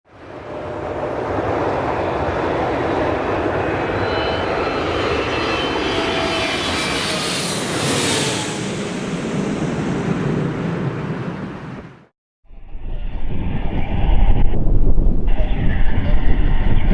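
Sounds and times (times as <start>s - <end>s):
jet engines at taxi power: 0.1s - 12.1s.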